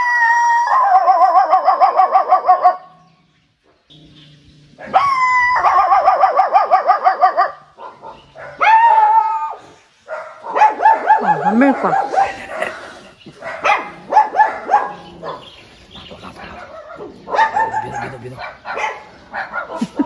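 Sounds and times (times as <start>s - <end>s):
dog-like whining calls: 3.9s - 9.8s, 10.6s - 13.0s, 13.7s - 19.9s.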